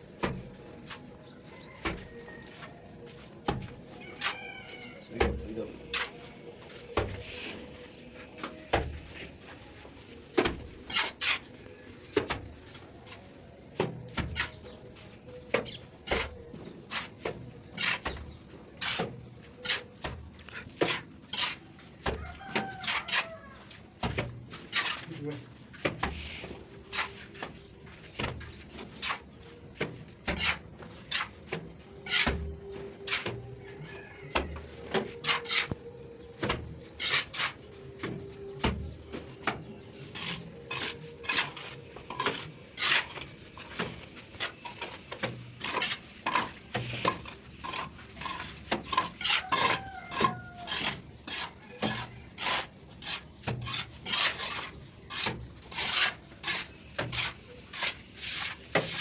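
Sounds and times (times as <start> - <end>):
trowel scraping mortar on bricks: 5.2 - 13.2, 13.8 - 33.6, 34.4 - 59.0.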